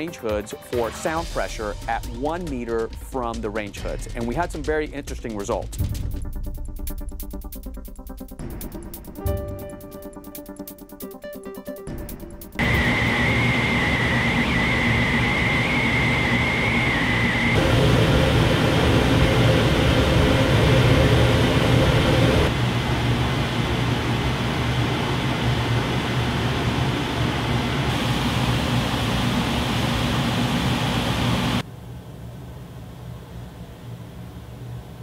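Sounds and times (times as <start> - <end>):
range hood fan running: 12.6 - 35.0.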